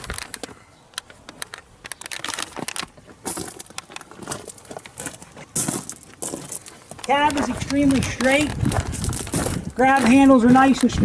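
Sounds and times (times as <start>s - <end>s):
sharp clicks: 0.0s - 4.1s, 6.6s - 11.0s
rustling: 0.0s - 10.9s
footsteps crunching: 0.0s - 11.0s.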